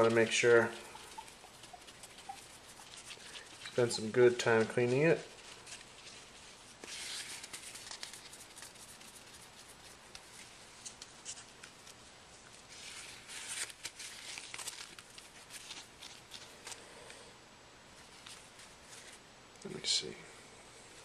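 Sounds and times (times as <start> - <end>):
cloth rubbing a screen: 0.0 - 12.0, 12.6 - 16.8.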